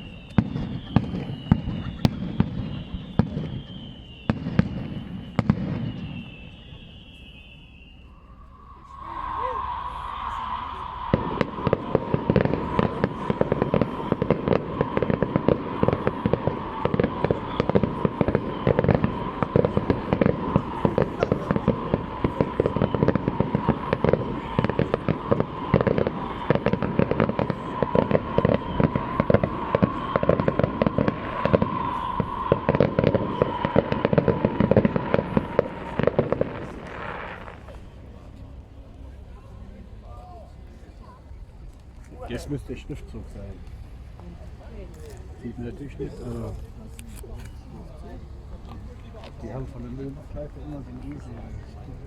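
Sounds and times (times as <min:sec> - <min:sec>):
fireworks bursts and bangs: 0:00.0 - 0:07.1, 0:09.1 - 0:38.6
fireworks crackling: 0:00.0 - 0:39.3.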